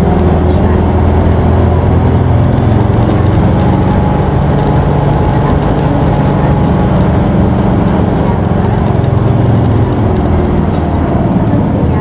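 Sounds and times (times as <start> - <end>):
bus diesel engine drone: 0.0 - 12.0.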